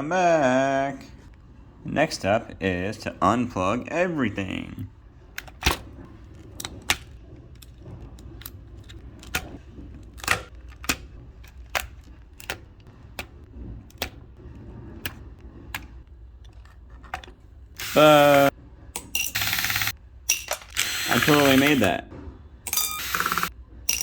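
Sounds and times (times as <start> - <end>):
plastic connectors clicking: 6.6 - 14.2.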